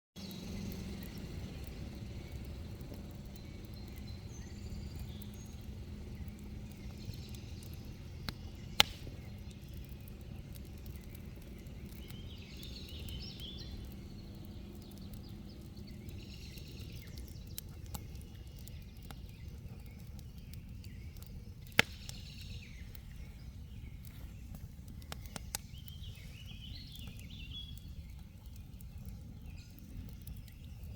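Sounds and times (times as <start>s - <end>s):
campfire flames rushing: 0.2s - 30.9s
fire crackles: 0.2s - 30.9s
loud sharp pops: 8.3s - 9.3s, 21.7s - 22.2s.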